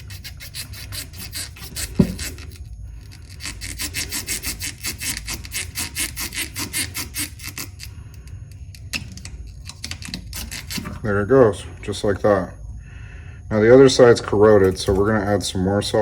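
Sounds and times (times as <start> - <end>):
metal connector rasping on terminal: 0.0 - 11.2.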